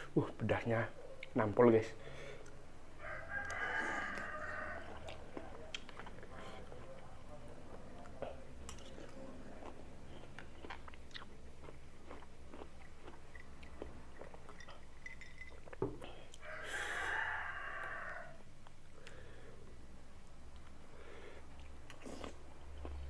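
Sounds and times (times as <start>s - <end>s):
crunchy chewing: 3.3s - 14.8s, 21.5s - 23.0s.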